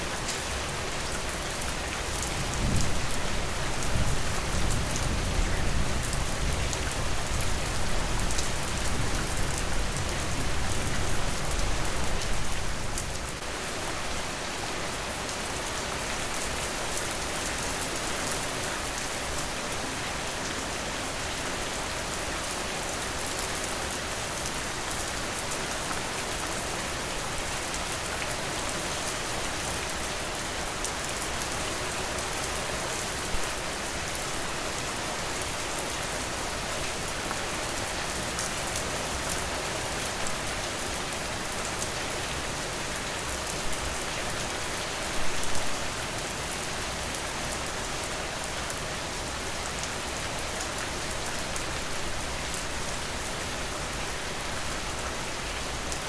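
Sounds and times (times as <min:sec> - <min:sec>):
rain falling on a surface: 0:00.0 - 0:56.0.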